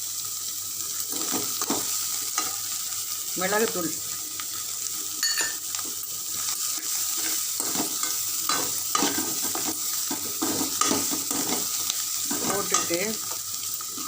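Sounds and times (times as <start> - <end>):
food sizzling in a frying pan: 0.0 - 14.0
spoon scraping a pan: 6.8 - 13.0.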